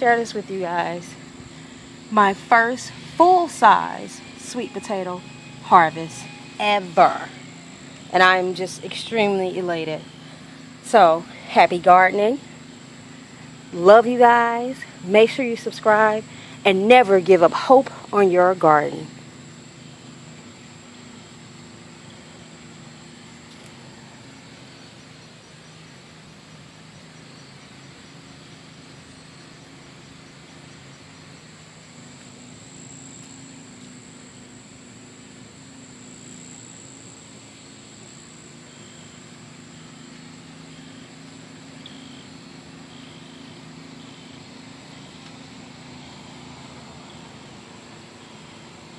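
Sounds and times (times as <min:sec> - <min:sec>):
high-pitched insect drone: 0:00.0 - 0:48.9
low steady hum: 0:00.0 - 0:48.9.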